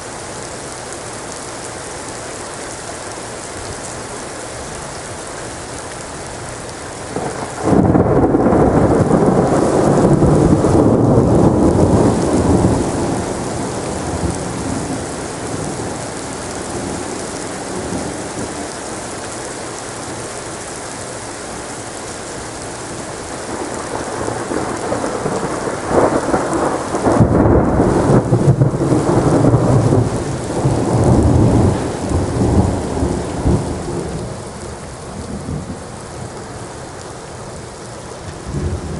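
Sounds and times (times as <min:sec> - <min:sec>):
rain hiss: 0:00.0 - 0:38.9
thunder rumbling: 0:07.1 - 0:18.9, 0:23.4 - 0:36.8, 0:38.3 - 0:38.9
sharp thunder cracks: 0:07.2 - 0:13.2.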